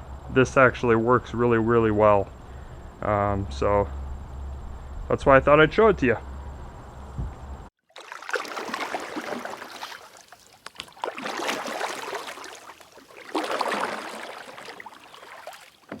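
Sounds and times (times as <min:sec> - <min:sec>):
kayak paddle strokes in water: 0:07.8 - 0:16.0.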